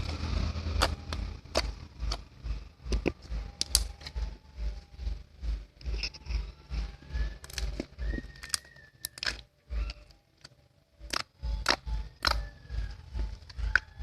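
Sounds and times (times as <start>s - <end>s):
background music with low beat: 0.0s - 14.0s
slime crackling and popping: 2.9s - 4.3s, 7.2s - 14.0s.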